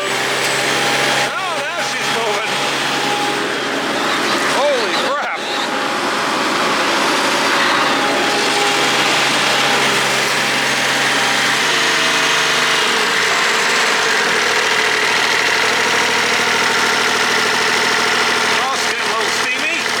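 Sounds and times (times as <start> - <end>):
vacuum fan air rush: 0.0 - 18.7
diesel engine running: 0.0 - 20.0.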